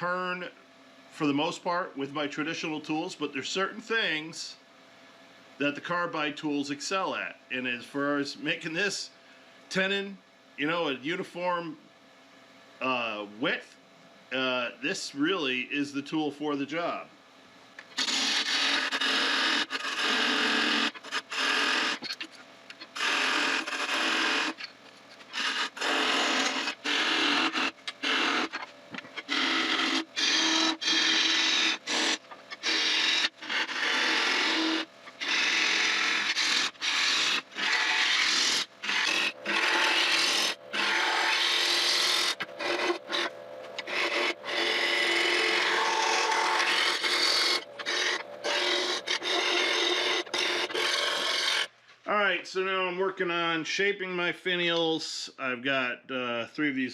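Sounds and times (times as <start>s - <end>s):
lathe tool scraping wood: 17.8s - 51.7s.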